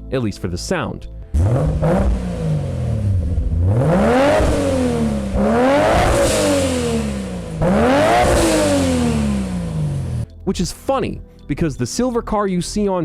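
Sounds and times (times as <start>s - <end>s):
car engine revving: 1.3s - 10.3s.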